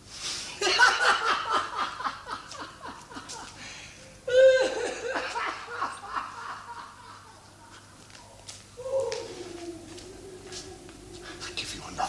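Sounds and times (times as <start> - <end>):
person laughing: 4.3 - 7.9, 9.5 - 11.4.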